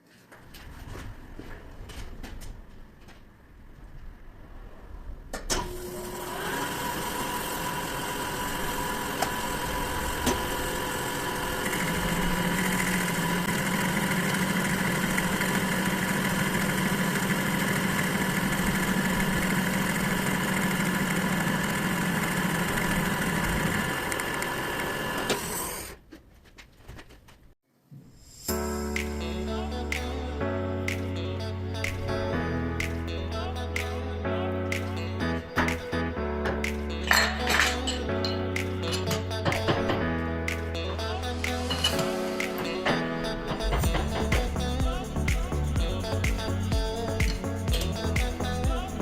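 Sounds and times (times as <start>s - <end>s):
metal lathe whining: 5.6s - 26.0s
low hum: 28.0s - 49.0s.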